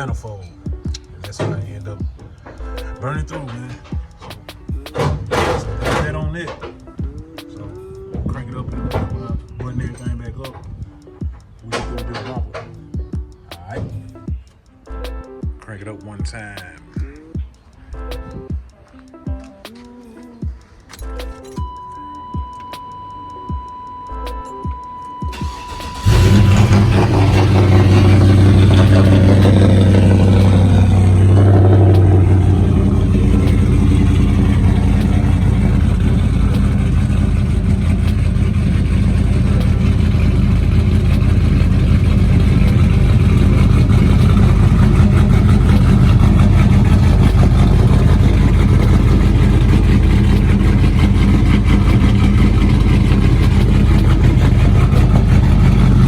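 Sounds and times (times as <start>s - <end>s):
truck engine starting and idling: 0.9s - 6.9s, 22.8s - 56.0s.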